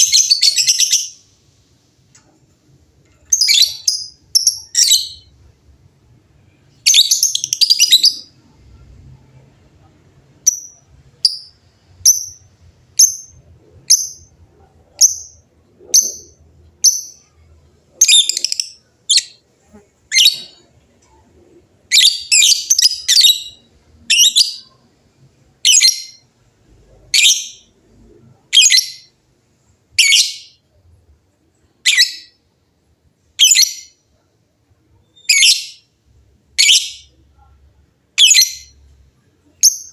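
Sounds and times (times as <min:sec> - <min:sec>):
lovebirds shrill calls: 0:00.0 - 0:01.2, 0:06.9 - 0:08.3.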